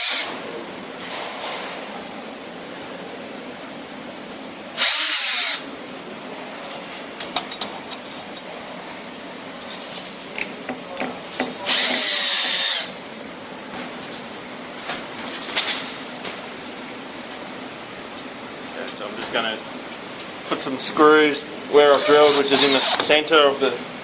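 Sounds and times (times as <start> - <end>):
power drill boring into plastic: 22.0 - 23.1.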